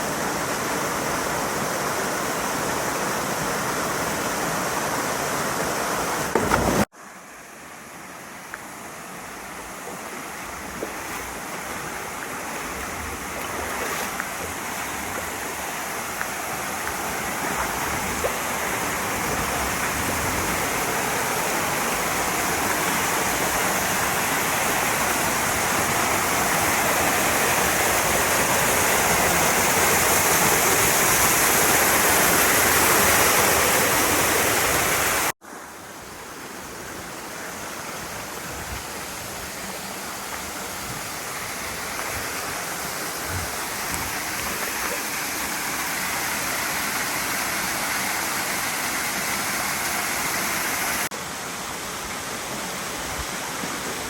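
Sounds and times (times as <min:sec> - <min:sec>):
stream water rushing: 0:00.0 - 0:54.0.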